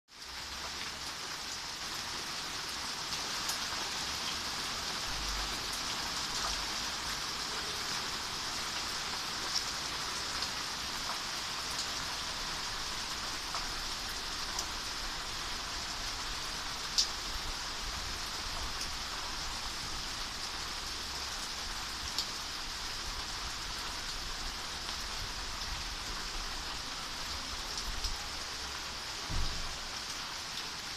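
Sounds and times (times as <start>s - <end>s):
steady rain: 0.1s - 30.9s
short low thump: 29.3s - 29.6s.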